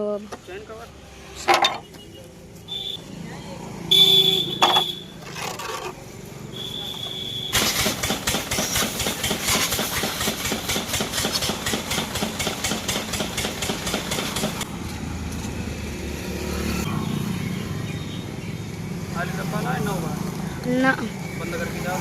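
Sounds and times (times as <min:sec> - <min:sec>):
pressure washer running: 0:07.5 - 0:14.6.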